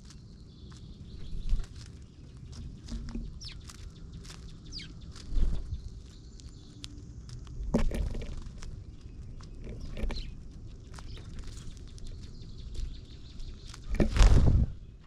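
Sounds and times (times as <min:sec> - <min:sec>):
birds chirping: 0:00.0 - 0:15.0
rustling thumps: 0:13.8 - 0:14.8.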